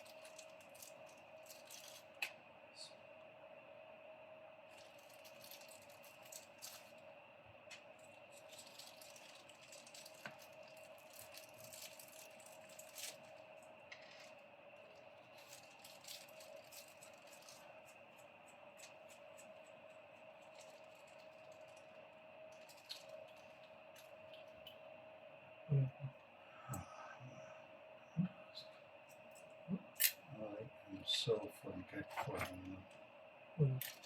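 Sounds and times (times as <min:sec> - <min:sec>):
small screws rattling: 0:00.0 - 0:02.2, 0:08.0 - 0:13.3, 0:15.3 - 0:18.2, 0:22.5 - 0:24.1.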